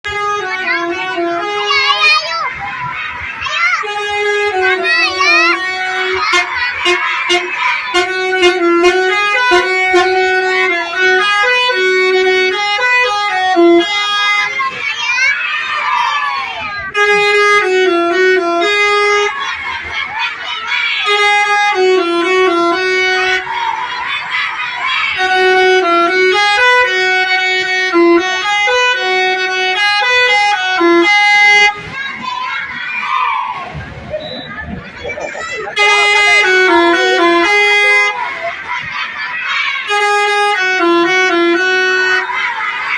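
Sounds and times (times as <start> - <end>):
musical vehicle horn melody: 0.0 - 2.1, 3.8 - 14.7, 16.9 - 19.7, 20.9 - 23.8, 24.9 - 31.9, 35.6 - 38.8, 39.5 - 42.9.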